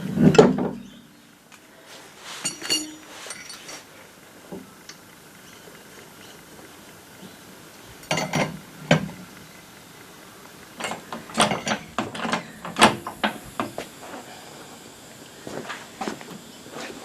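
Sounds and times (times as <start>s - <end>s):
hand tools and metal parts clinking: 2.4s - 3.9s, 10.8s - 13.4s.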